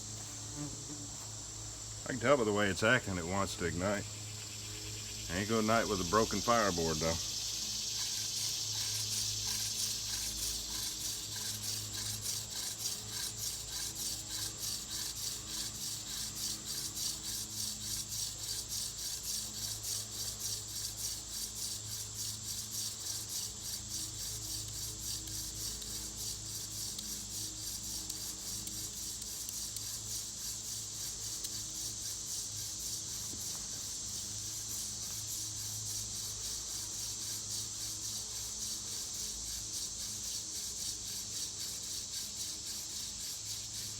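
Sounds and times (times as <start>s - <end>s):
wooden spindle friction rasp: 7.9s - 33.9s.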